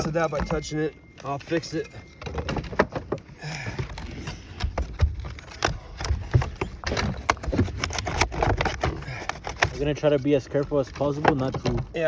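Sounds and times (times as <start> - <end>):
wooden shingles knocking and scraping: 0.0 - 12.0.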